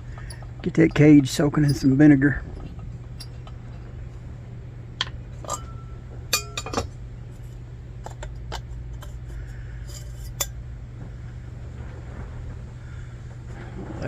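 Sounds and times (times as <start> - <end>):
steady low hum: 0.0 - 14.0
metal and glass parts clinking: 0.1 - 3.6, 5.0 - 7.0.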